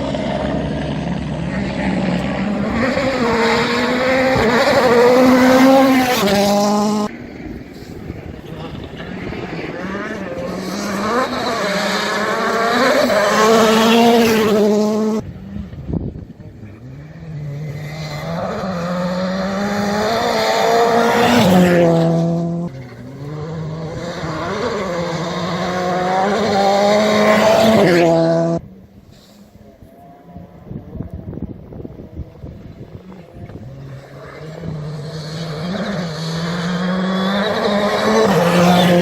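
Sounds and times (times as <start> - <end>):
rally car engines revving: 0.0 - 39.0.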